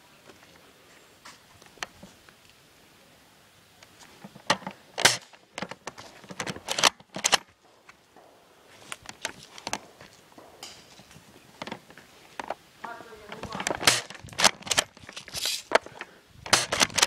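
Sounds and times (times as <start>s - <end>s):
airsoft gear clattering: 4.2s - 7.6s, 8.8s - 12.6s, 13.2s - 17.0s.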